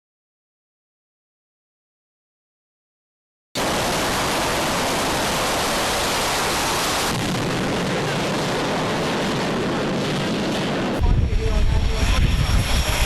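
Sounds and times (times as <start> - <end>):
loud rushing noise: 3.6 - 13.0.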